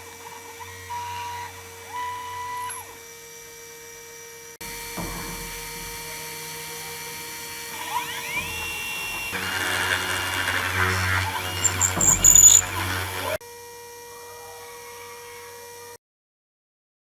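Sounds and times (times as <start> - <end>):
stepper motors whining: 0.0 - 13.4
spindle humming: 4.6 - 13.4.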